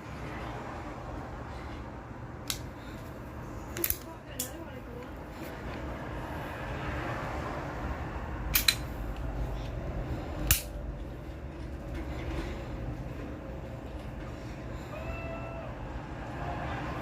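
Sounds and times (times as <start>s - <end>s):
pistol mechanical clicks: 8.5s - 8.9s, 10.4s - 10.8s.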